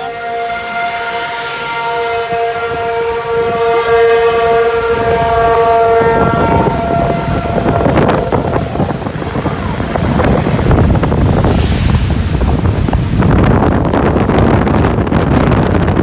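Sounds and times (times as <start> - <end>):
warning siren steady tone: 0.0 - 11.7
wind buffeting microphone: 0.0 - 16.0.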